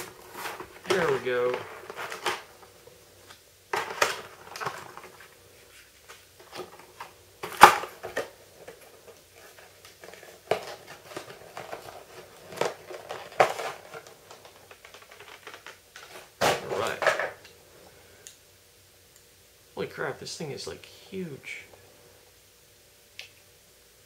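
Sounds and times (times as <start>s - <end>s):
cardboard packaging crackling: 0.0s - 17.2s.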